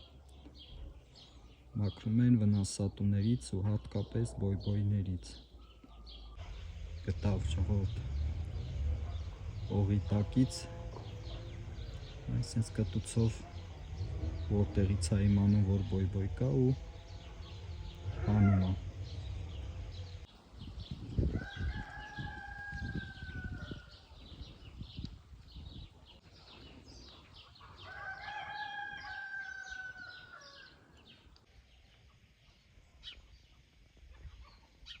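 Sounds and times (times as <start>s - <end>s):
small birds chirping: 0.0s - 35.0s
rooster crowing: 17.1s - 20.1s, 21.2s - 24.0s, 27.7s - 30.9s.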